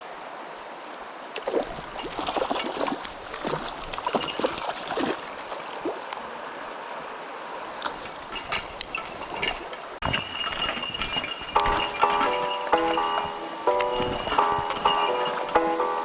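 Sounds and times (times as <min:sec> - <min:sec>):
stream flowing: 0:00.0 - 0:16.0
knocks and clicks: 0:11.0 - 0:16.0.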